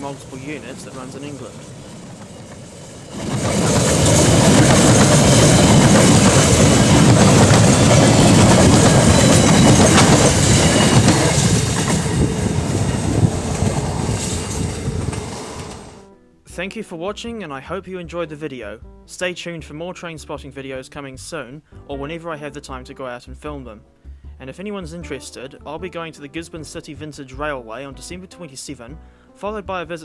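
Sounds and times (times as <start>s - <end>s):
wheels clattering on rails: 0.0s - 16.0s
freight train rumbling: 0.0s - 16.1s.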